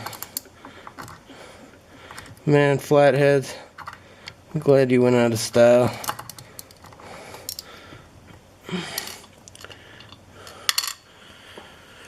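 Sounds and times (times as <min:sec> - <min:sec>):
screwdriver and lock parts clicking: 0:06.0 - 0:07.6.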